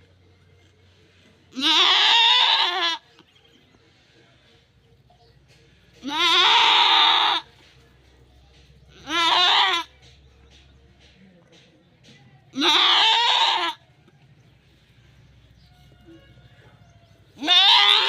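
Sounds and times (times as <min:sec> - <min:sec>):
goat bleating: 0:01.5 - 0:03.2, 0:06.0 - 0:07.5, 0:08.9 - 0:09.9, 0:12.5 - 0:13.9, 0:17.4 - 0:18.0.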